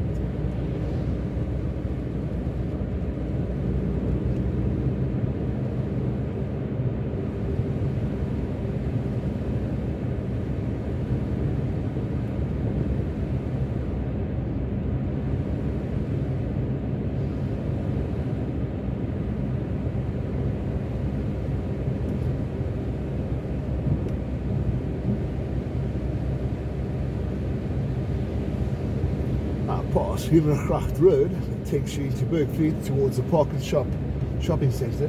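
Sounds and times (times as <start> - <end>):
car engine and road rumble: 0.0 - 35.0
faint hum: 22.1 - 35.0.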